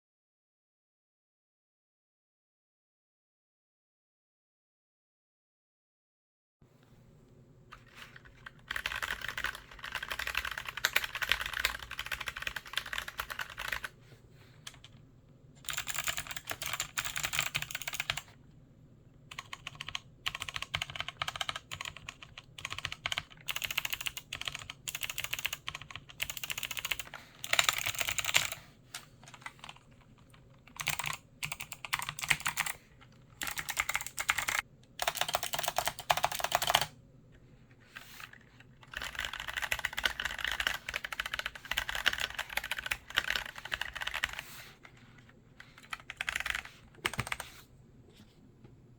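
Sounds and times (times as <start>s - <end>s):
typing on mechanical keyboard: 7.8s - 13.9s, 14.7s - 15.0s, 15.6s - 18.4s, 19.3s - 37.0s, 38.0s - 45.0s, 45.6s - 47.6s.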